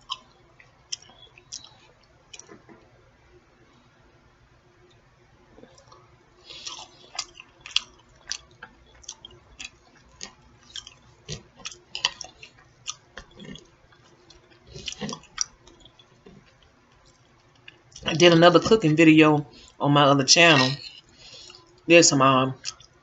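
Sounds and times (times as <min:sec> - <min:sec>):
person chewing food: 0:00.0 - 0:02.6, 0:05.6 - 0:18.1, 0:20.8 - 0:21.9, 0:22.6 - 0:23.0.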